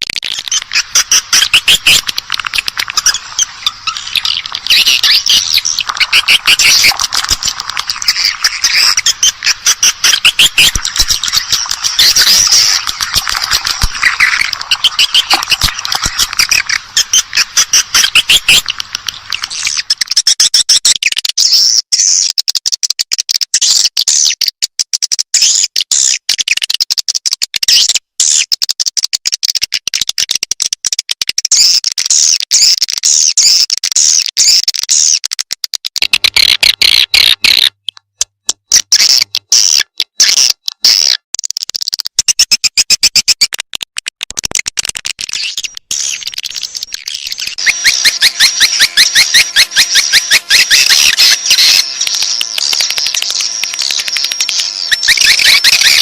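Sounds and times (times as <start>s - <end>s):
dry clicking trills: 0.0s - 21.2s, 32.6s - 56.0s
swiftlet twittering chirps: 0.2s - 20.5s, 45.3s - 56.0s.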